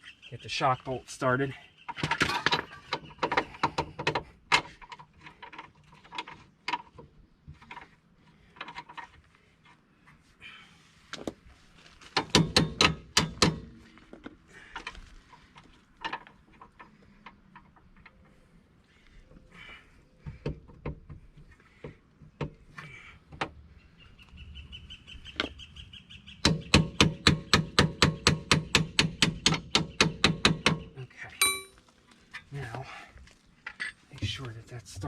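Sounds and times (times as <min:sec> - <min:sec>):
metal tools clicking and knocking: 0:31.4 - 0:31.8.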